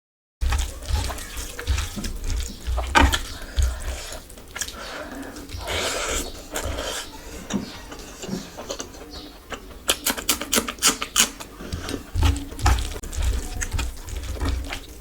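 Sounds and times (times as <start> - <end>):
dull thuds: 0.4 - 4.4
person chewing: 0.4 - 15.0
wet mouth clicks and smacks: 2.0 - 5.6, 8.8 - 11.5.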